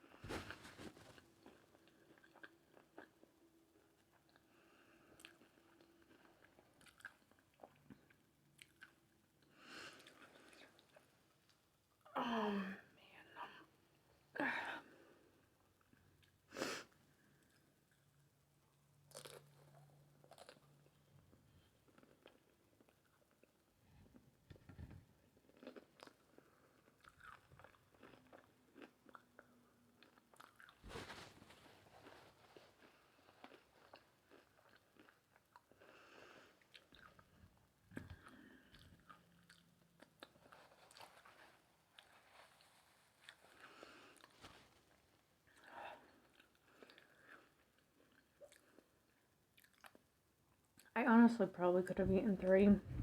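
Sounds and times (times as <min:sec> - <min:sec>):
soft chewing clicks: 0:01.2 - 0:03.4, 0:04.0 - 0:11.6, 0:25.5 - 0:30.8, 0:32.0 - 0:44.8, 0:45.5 - 0:50.9
crunchy taco crunching: 0:05.1 - 0:09.0, 0:19.0 - 0:21.0, 0:25.4 - 0:48.9.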